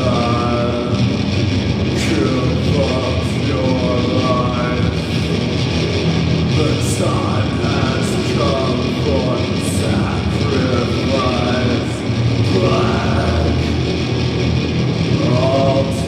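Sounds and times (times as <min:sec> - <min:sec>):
loud doom metal band: 0:00.0 - 0:16.0.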